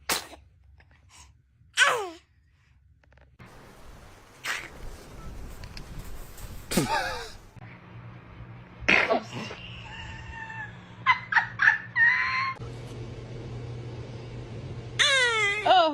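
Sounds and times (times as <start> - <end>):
baby sneezing: 0.0 - 0.5, 8.9 - 9.5.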